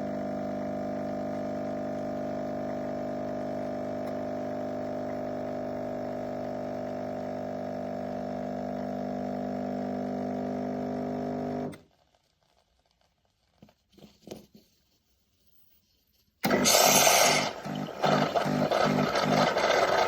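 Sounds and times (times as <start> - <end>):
espresso machine pump humming: 0.0 - 11.7, 16.4 - 20.0.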